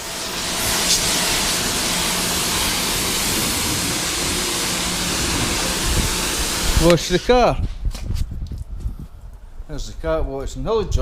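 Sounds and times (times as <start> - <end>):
pump humming: 0.0 - 7.0
pressure washer water jet hissing: 0.0 - 7.4.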